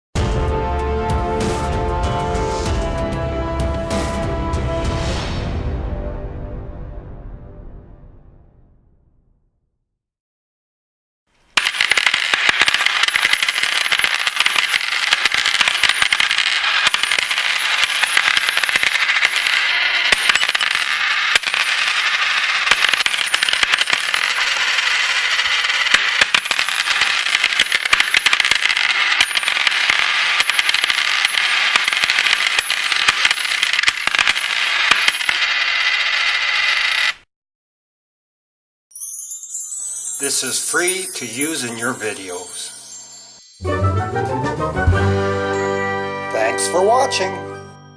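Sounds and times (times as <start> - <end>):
coins jingling and clinking: 11.6 - 37.2, 38.9 - 44.0.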